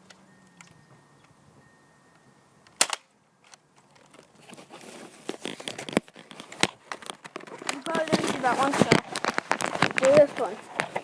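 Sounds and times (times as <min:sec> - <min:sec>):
rustling of handling: 0:03.4 - 0:11.0.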